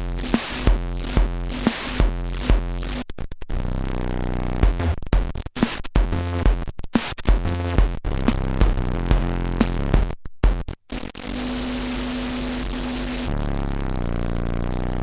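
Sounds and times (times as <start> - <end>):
kick drum beat: 7.3 - 8.0, 8.6 - 10.7.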